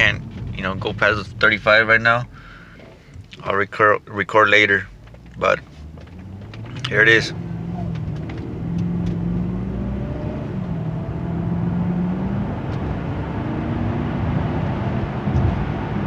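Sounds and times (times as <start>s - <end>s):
road noise: 0.0s - 16.0s
car engine accelerating: 5.0s - 16.0s.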